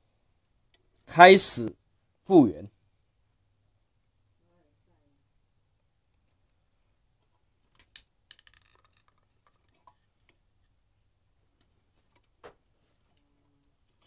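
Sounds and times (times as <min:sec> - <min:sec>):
clicks and knocks of parts: 0:07.6 - 0:10.8.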